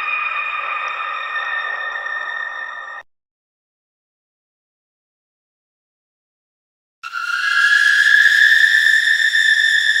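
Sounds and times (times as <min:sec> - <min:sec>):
shrill high-pitched tone: 0:07.0 - 0:10.0.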